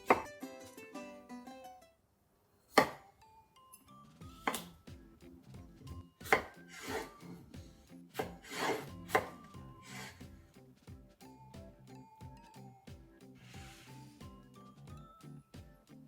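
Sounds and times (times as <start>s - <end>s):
plucked-string background music: 0.0s - 2.0s, 2.8s - 16.0s
knife cutting on cutting board: 4.4s - 4.7s, 6.2s - 7.4s, 8.2s - 10.2s
knife scraping board: 6.3s - 7.4s, 8.2s - 10.2s.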